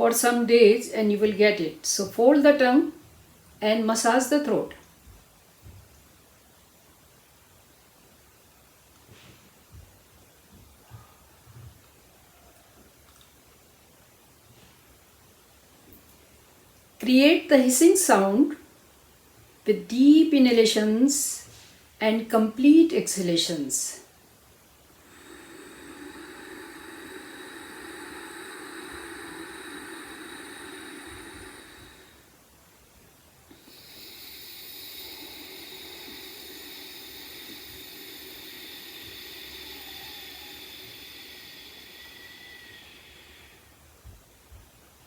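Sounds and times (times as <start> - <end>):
hissing breath out: 24.9 - 32.5, 33.5 - 44.0
person breathing in: 24.9 - 32.5, 33.5 - 44.1.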